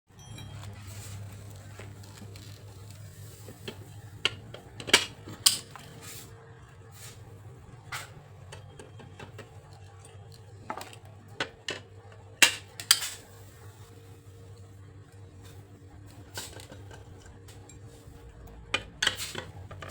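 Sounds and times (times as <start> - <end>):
steady low hum: 0.2 - 19.9
metal tools clinking: 3.6 - 6.0.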